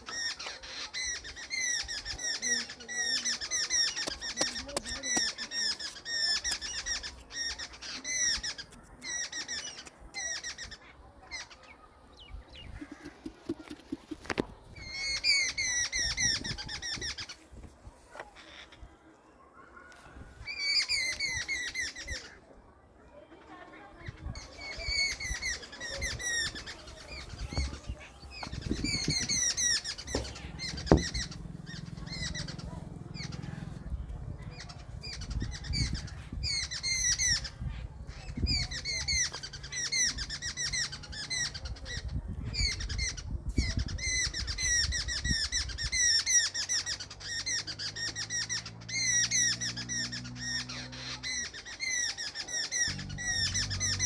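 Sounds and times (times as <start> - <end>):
birds chirping: 0.0 - 54.0.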